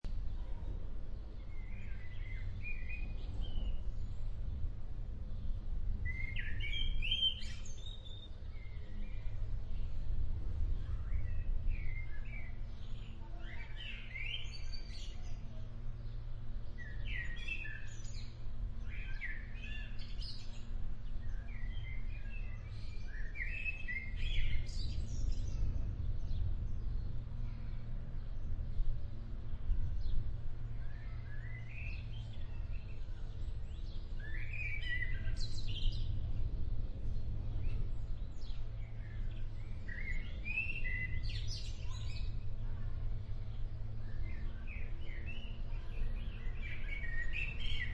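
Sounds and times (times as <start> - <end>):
birds chirping and calling: 6.0 - 9.4, 16.8 - 27.8, 30.9 - 36.2, 37.2 - 42.4, 43.4 - 47.9.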